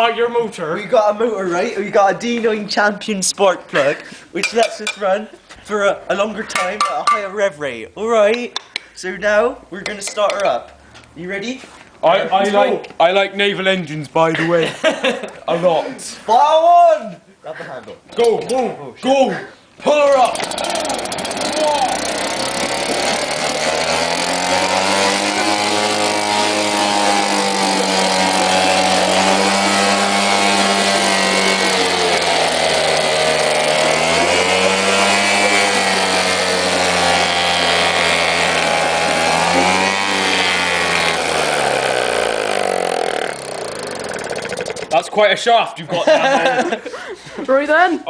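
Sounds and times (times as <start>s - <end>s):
outboard motor revving: 20.1s - 45.3s.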